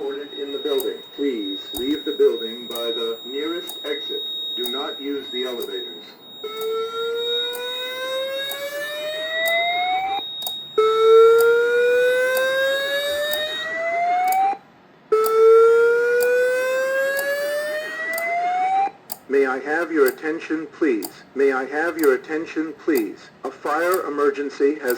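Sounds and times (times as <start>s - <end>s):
slow whoop alarm tone: 0.0s - 14.6s, 15.2s - 19.0s.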